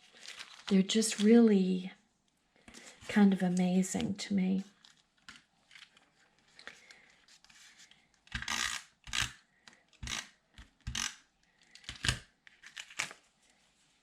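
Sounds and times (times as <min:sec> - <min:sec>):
paper rustling: 0:00.0 - 0:01.4.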